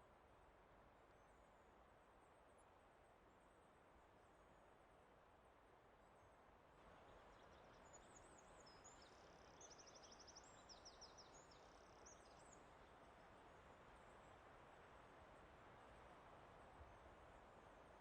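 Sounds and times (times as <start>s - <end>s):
soft steady hiss: 0.0s - 18.0s
songbird singing: 6.9s - 12.8s.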